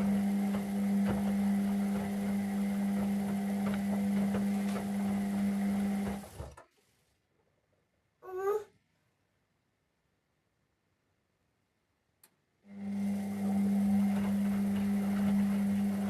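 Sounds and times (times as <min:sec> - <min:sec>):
washing machine motor humming: 0:00.0 - 0:06.6, 0:12.7 - 0:16.0.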